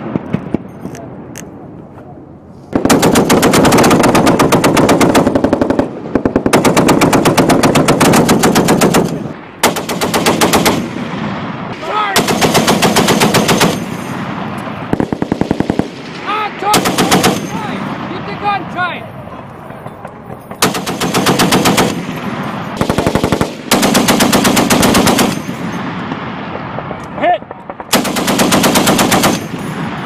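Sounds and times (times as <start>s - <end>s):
heavy machine guns firing bursts: 2.8s - 18.1s, 20.5s - 26.0s, 27.5s - 30.0s.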